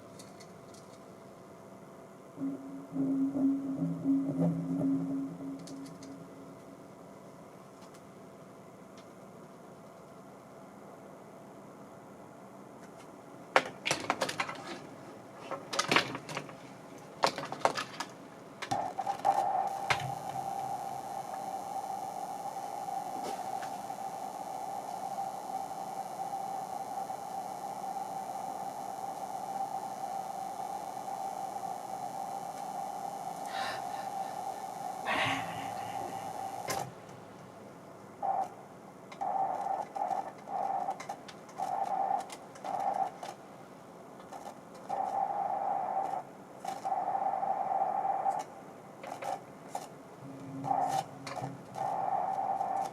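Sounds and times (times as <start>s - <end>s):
steady electronic tone with hiss: 0.0s - 9.5s, 10.2s - 52.9s
electronic tone bursts: 2.4s - 6.6s, 18.8s - 37.1s, 50.2s - 52.9s.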